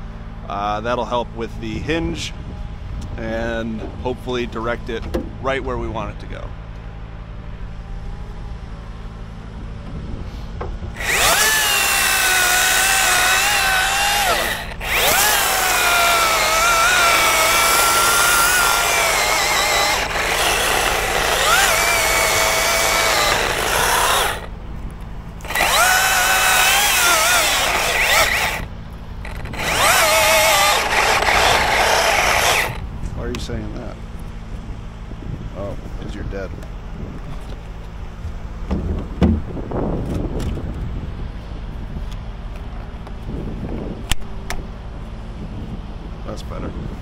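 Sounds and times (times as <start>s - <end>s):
low engine hum: 0.0s - 47.0s
chainsaw cutting: 11.0s - 24.6s, 25.3s - 32.8s.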